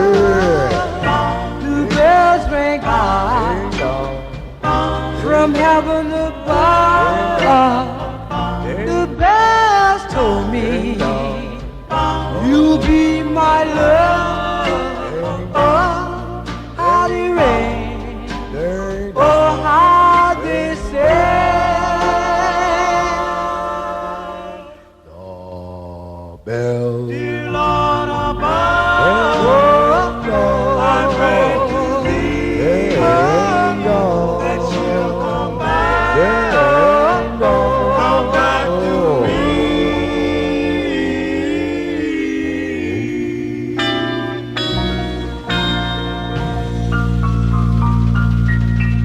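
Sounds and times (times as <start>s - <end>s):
vocal group singing in harmony: 0.0s - 47.2s.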